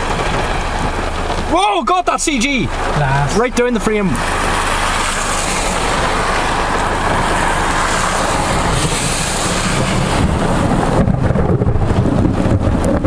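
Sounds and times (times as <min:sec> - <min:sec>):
rain: 0:00.0 - 0:13.0
wind rushing: 0:04.1 - 0:13.0
low rumbling thunder: 0:05.7 - 0:13.0.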